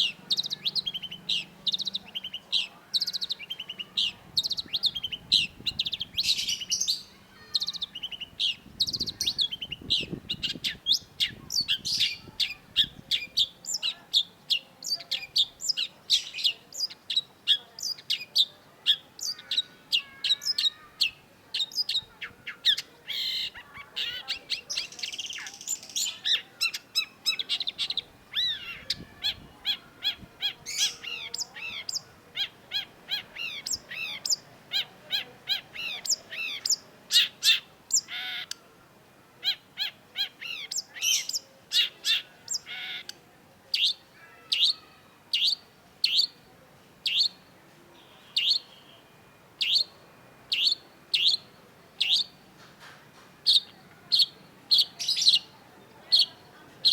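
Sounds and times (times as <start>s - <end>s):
bird singing high chattering notes: 0.0s - 38.6s, 39.5s - 43.2s, 48.0s - 52.4s.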